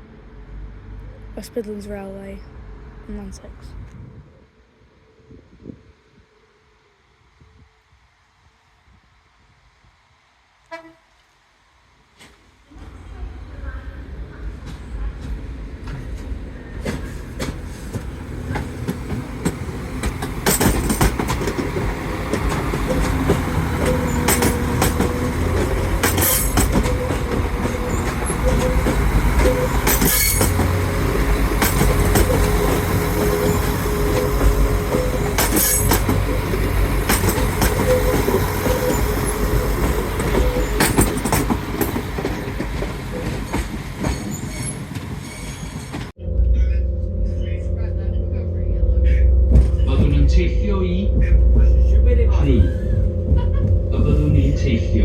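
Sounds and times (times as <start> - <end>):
steady train whine: 0.0 - 55.0
train rumbling on rails: 0.0 - 55.0
wheels clacking over rail joints: 14.4 - 46.1.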